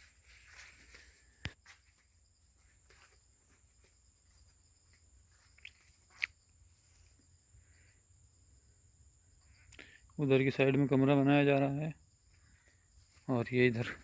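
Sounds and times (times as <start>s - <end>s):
footsteps and scuffs: 0.0s - 7.2s.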